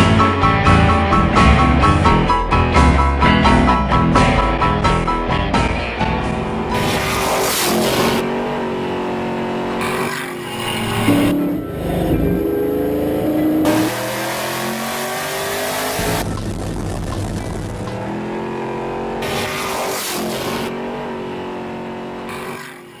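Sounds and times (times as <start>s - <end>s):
race car engine revving: 6.0s - 23.0s.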